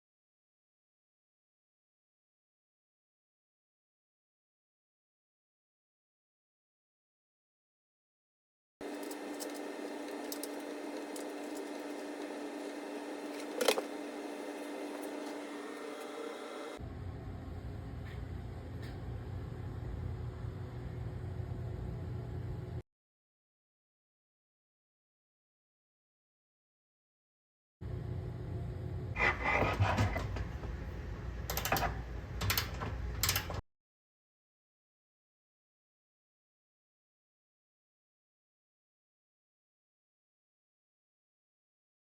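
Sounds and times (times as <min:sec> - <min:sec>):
steady hum: 0:08.8 - 0:22.8
hand tools clicking and scraping: 0:29.2 - 0:30.7.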